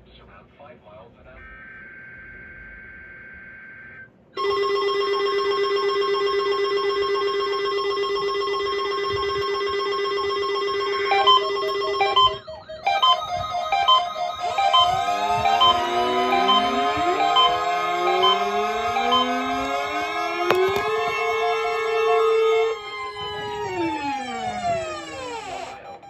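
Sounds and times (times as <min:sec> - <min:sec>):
short beeping melody: 0:11.1 - 0:21.2
warbling electronic chord: 0:13.7 - 0:25.7.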